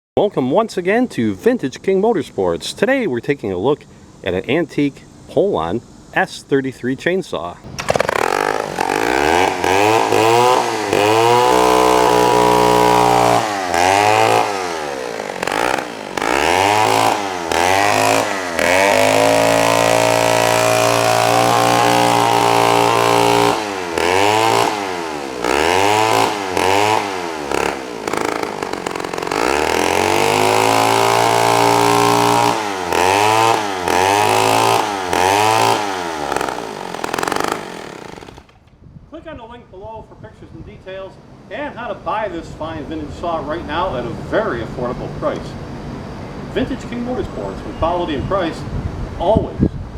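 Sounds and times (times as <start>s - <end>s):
chainsaw engine revving: 7.7s - 38.6s.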